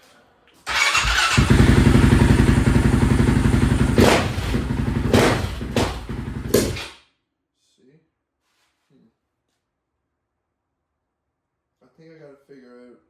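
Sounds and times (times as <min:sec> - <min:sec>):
atv engine running: 0:00.7 - 0:06.9.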